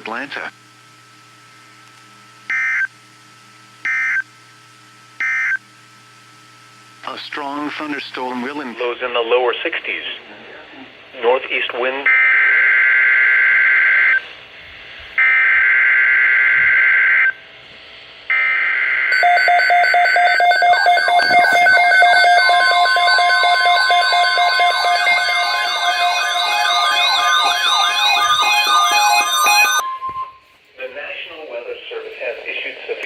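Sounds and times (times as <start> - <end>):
alert tones with falling sweep: 19.2 - 30.6.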